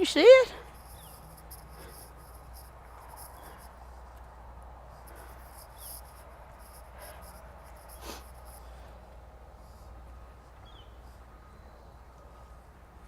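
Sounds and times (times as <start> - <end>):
insects chirping: 0.0 - 3.8, 5.0 - 8.7.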